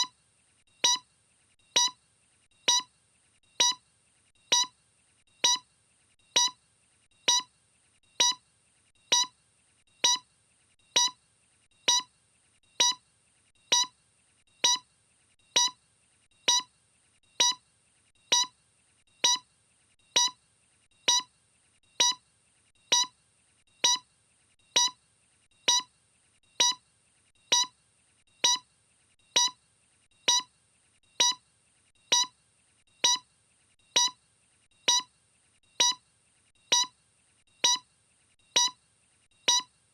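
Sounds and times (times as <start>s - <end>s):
short electronic beeps: 0.8s - 1.0s, 1.8s - 2.0s, 2.7s - 2.9s, 3.6s - 3.8s, 4.5s - 4.7s, 5.4s - 5.6s, 6.4s - 6.6s, 7.3s - 7.5s, 8.2s - 8.4s, 9.1s - 9.3s, 10.0s - 10.2s, 11.0s - 11.2s, 11.9s - 12.1s, 12.8s - 13.0s, 13.7s - 13.9s, 14.6s - 14.8s, 15.6s - 15.8s, 16.5s - 16.7s, 17.4s - 17.6s, 18.3s - 18.5s, 19.2s - 19.4s, 20.2s - 20.4s, 21.1s - 21.3s, 22.0s - 22.2s, 22.9s - 23.1s, 23.8s - 24.0s, 24.8s - 25.0s, 25.7s - 25.9s, 26.6s - 26.8s, 27.5s - 27.7s, 28.4s - 28.6s, 29.4s - 29.6s, 30.3s - 30.5s, 31.2s - 31.4s, 32.1s - 32.3s, 33.0s - 33.2s, 34.0s - 34.2s, 34.9s - 35.1s, 35.8s - 36.0s, 36.7s - 36.9s, 37.6s - 37.8s, 38.6s - 38.8s, 39.5s - 39.7s.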